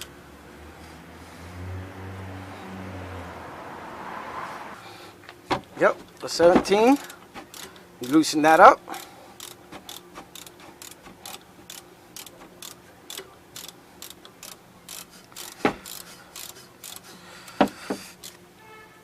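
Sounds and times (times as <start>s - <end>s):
metal knocks: 5.5s - 7.5s
ratchet clicking: 7.0s - 18.4s.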